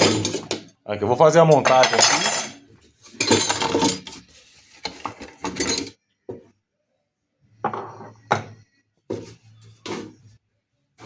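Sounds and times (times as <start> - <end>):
metal parts clinking together: 0.0 - 0.6.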